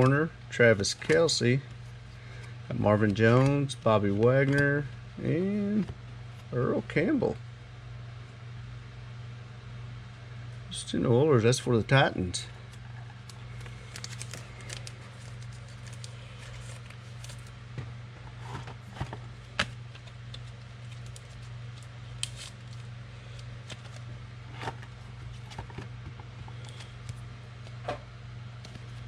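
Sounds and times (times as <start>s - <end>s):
cards clicking and rustling: 0.8s - 1.4s, 2.3s - 4.9s, 12.7s - 17.5s, 18.4s - 24.0s.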